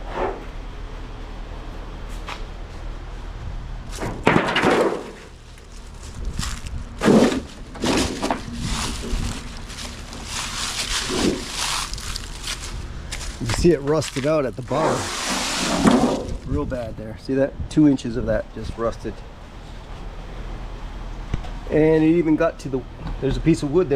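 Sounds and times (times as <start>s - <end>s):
steady low hum: 0.0s - 23.9s
sheet metal crinkling and scraping: 3.9s - 16.8s.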